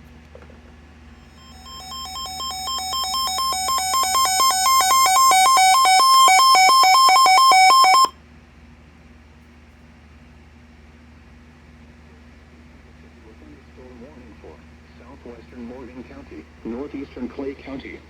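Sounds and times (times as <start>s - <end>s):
electronic two-tone alert: 1.4s - 8.1s.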